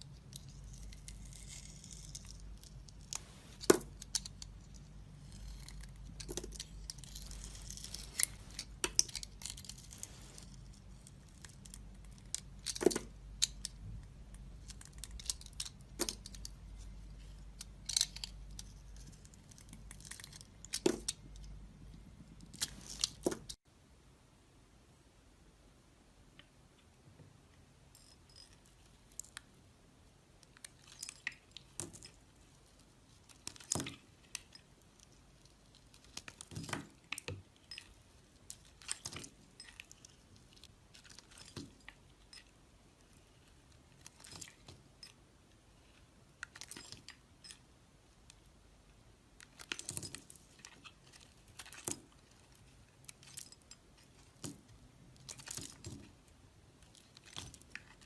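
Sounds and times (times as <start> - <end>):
knife carving soap: 0.0 - 23.6.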